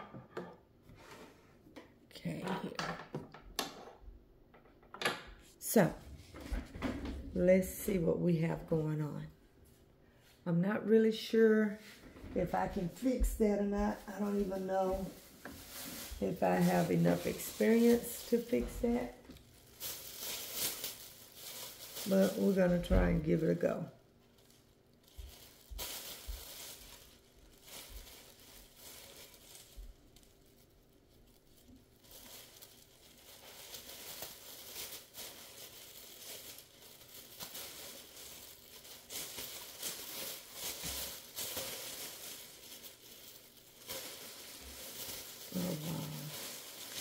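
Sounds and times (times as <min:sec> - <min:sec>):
rustling and handling noises: 0:11.3 - 0:47.0.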